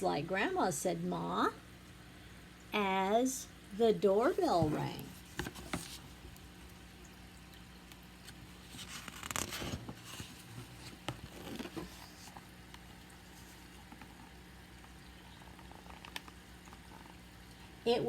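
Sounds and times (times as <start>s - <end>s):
faint steady hum: 0.0s - 18.0s
soft rustling and handling: 4.2s - 6.4s, 8.2s - 14.3s.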